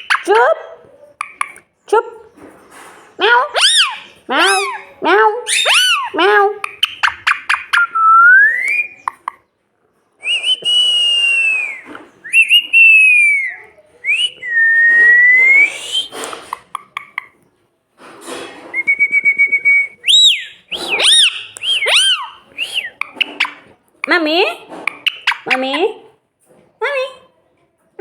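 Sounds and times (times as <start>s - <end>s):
parrot whistling: 3.5s - 4.9s, 5.5s - 9.2s, 18.8s - 23.7s, 24.9s - 25.7s.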